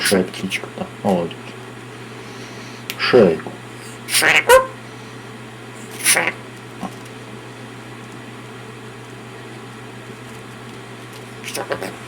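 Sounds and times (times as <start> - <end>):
low room hum: 0.0 - 12.0
parrot call: 3.8 - 4.8, 5.8 - 6.4.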